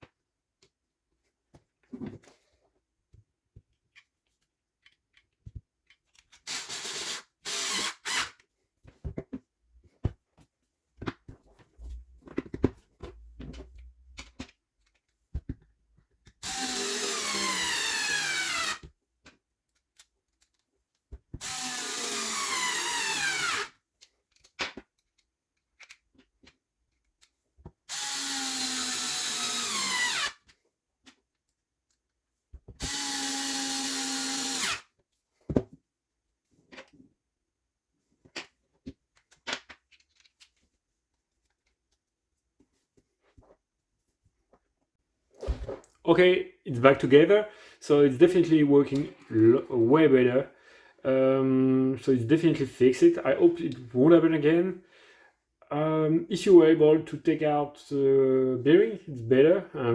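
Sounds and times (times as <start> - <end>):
power screwdriver motor: 16.4 - 18.8, 21.4 - 23.7, 27.9 - 30.4, 32.8 - 34.8.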